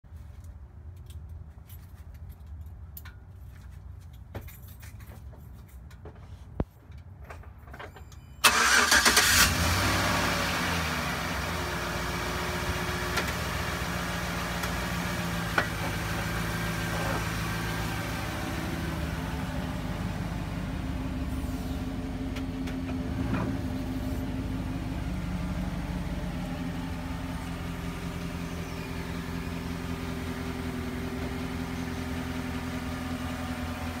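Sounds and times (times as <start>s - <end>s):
engine cranking and idling: 8.4s - 34.0s.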